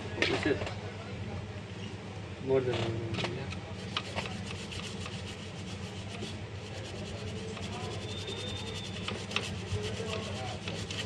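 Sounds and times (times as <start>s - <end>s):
brush scrubbing circuit board: 3.8s - 11.0s.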